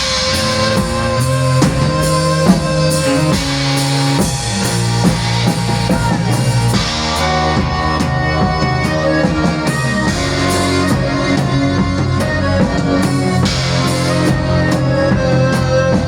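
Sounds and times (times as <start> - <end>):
drum kit beat: 0.0 - 16.0
live folk-rock band playing: 0.0 - 16.0.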